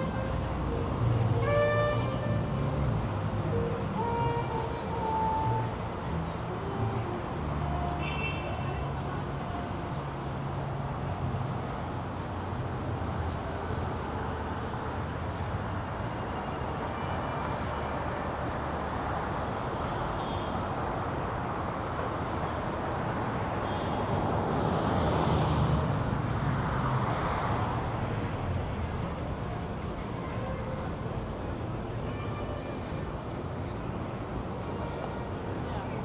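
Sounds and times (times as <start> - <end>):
hum of passing cars: 20.6 - 36.0.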